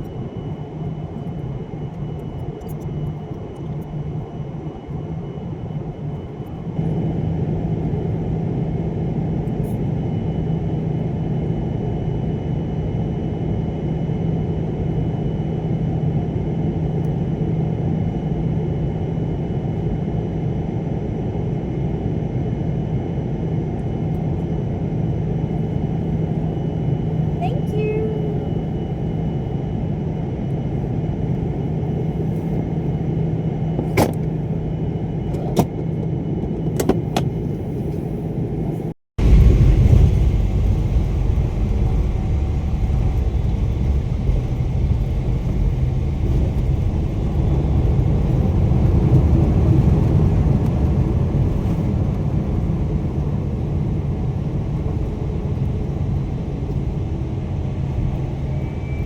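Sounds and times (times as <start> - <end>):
vehicle interior rumble and hum: 24.1 - 59.0.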